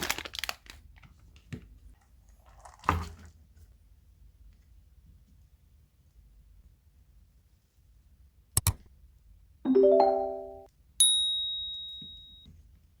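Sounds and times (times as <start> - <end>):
quick clicks: 8.6 - 8.9
high bell-like ding: 9.7 - 12.4
short chime chord: 9.7 - 12.4.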